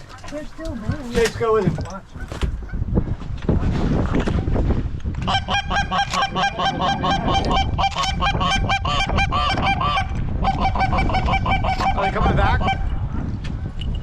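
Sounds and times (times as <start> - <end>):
geese honking: 5.3 - 12.9.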